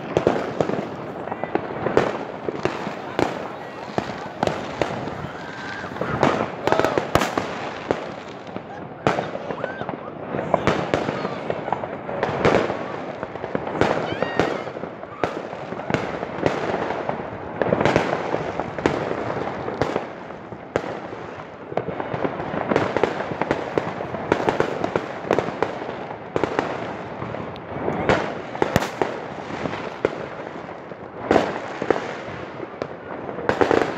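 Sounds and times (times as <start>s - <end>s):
firecrackers crackling: 0.0s - 33.9s
fireworks bangs: 0.0s - 33.9s.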